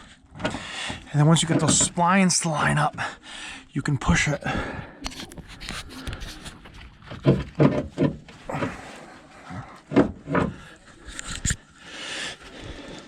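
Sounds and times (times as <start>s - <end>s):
metal knocks and scraping: 1.4s - 2.0s, 5.1s - 8.9s
metal clunks: 9.9s - 10.7s.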